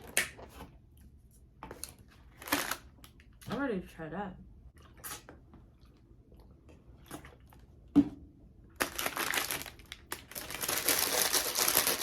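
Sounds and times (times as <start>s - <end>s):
wrapper crinkling: 2.3s - 2.9s, 8.8s - 12.0s.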